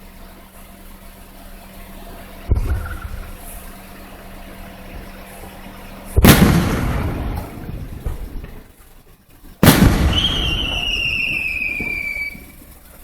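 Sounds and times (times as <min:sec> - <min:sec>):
firework shell booming: 0:02.5 - 0:03.4, 0:06.2 - 0:08.9, 0:09.6 - 0:12.6.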